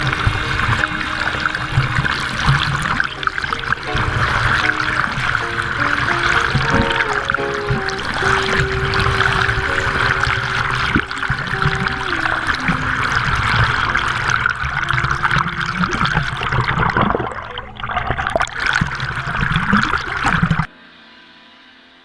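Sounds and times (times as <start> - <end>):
ringing musical chord: 0.0 - 15.4
rushing splashing water: 0.0 - 20.7.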